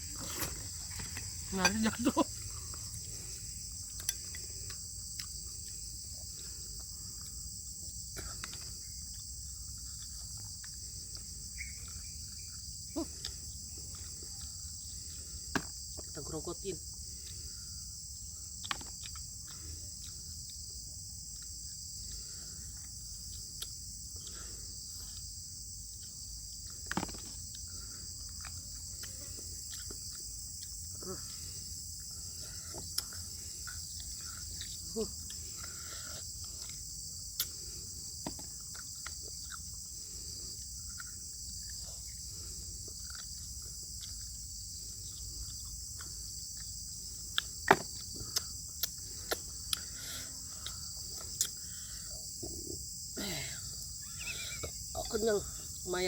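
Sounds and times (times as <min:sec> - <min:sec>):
crickets chirping: 0:00.0 - 0:56.0
chewing on bones: 0:18.4 - 0:24.4, 0:25.0 - 0:51.6
wet smacks and clicks: 0:47.4 - 0:49.9.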